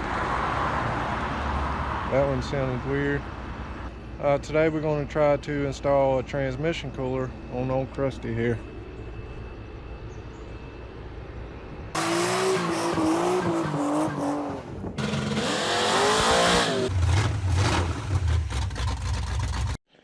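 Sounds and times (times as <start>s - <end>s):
car engine running: 12.0s - 19.8s
car tyres squealing: 12.0s - 19.8s.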